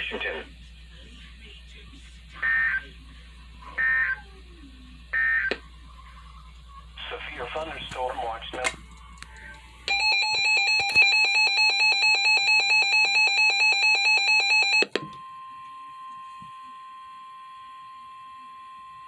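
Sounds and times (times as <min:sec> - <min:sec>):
rapid electronic alarm beep: 0:09.9 - 0:14.9.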